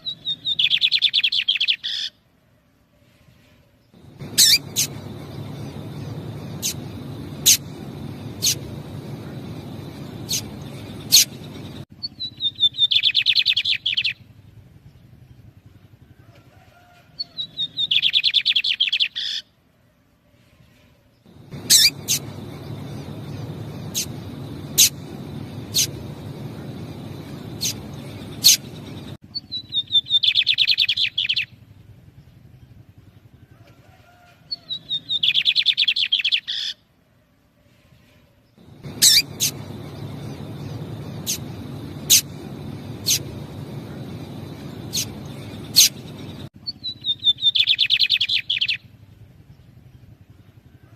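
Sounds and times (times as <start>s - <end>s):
bird trilled song: 0.1s - 2.1s, 4.0s - 14.2s, 17.3s - 19.4s, 21.3s - 31.5s, 34.6s - 36.8s, 38.6s - 48.9s
bird call notes: 4.0s - 11.8s, 21.4s - 29.2s, 38.6s - 46.5s.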